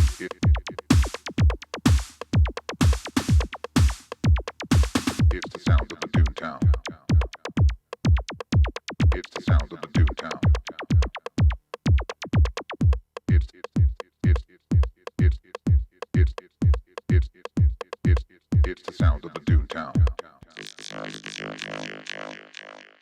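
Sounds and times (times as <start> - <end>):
ticking hi-hats: 0.0 - 20.2
drum machine kick drum: 0.0 - 20.3
synthesizer sounds: 20.5 - 23.0.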